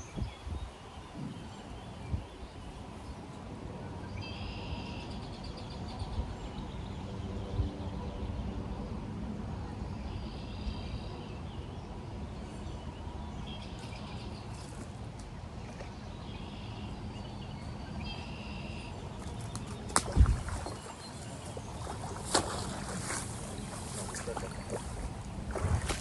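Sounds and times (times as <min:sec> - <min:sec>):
wind rumbling on microphone: 0:00.0 - 0:03.9, 0:19.1 - 0:26.0.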